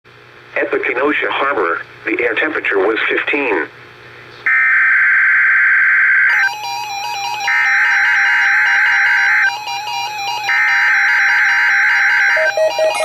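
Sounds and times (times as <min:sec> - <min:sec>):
alert beeps: 0:06.3 - 0:13.0.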